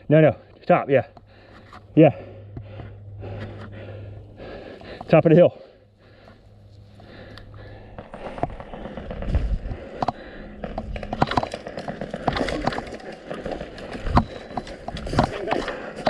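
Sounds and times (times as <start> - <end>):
heavy thumps: 1.1 - 5.2
rustling gear: 6.0 - 16.0.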